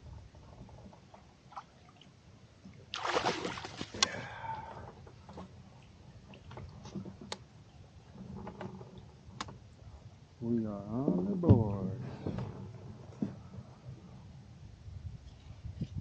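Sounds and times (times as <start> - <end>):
water splashing: 2.7 - 4.8.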